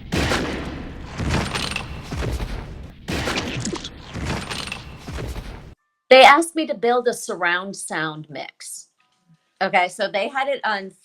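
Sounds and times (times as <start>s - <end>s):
impacts blasts and crashes: 0.0s - 5.8s.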